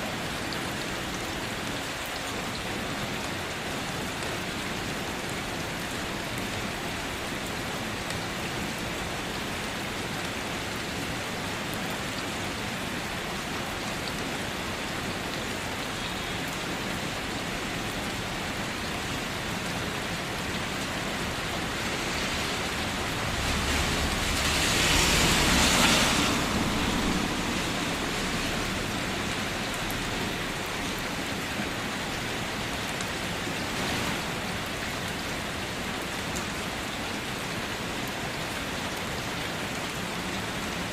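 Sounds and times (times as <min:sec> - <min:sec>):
light rain falling: 0:00.0 - 0:40.9.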